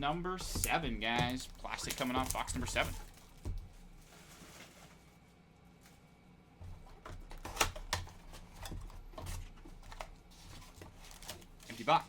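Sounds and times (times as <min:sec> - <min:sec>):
plastic wrap crinkling: 0:00.6 - 0:05.2, 0:09.8 - 0:12.0.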